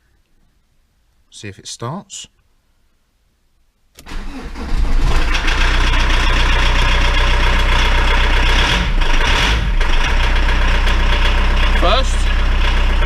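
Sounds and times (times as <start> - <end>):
car engine starting and idling: 4.0 - 13.0.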